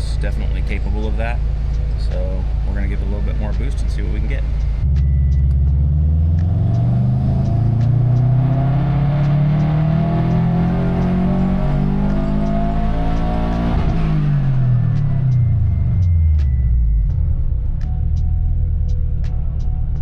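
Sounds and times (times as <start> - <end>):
car engine revving on a dyno: 5.8 - 14.6.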